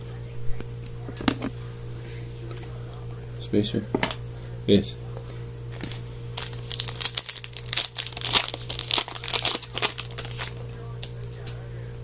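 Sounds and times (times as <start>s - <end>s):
packaging crinkling: 5.7s - 11.5s.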